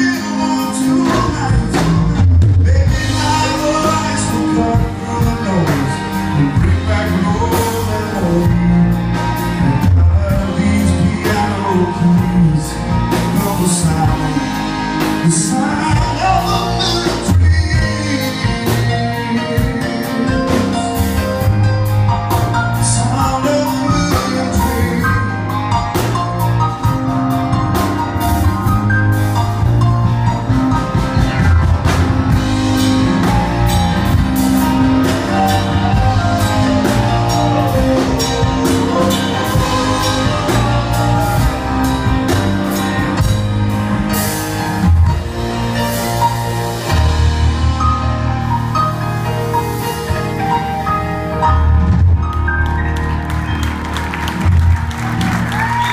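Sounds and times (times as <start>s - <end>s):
person singing: 0.0s - 26.3s, 31.4s - 43.4s
country-rock band playing: 0.0s - 55.9s.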